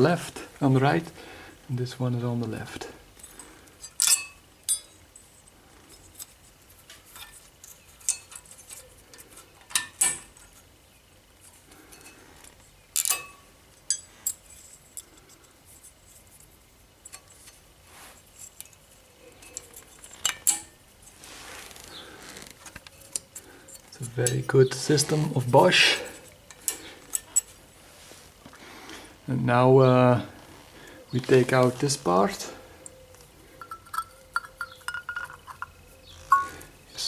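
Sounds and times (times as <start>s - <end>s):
metal clips clicking and clinking: 3.2s - 4.9s, 13.0s - 15.2s, 19.4s - 20.7s, 33.6s - 36.7s.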